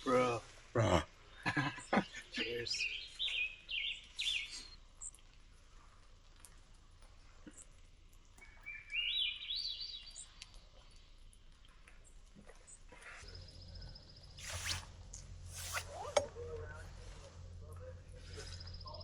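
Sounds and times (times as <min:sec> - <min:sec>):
songbird singing: 0:01.1 - 0:05.4, 0:07.2 - 0:19.0
low rumble: 0:13.2 - 0:19.0
brief rustling: 0:14.4 - 0:17.4.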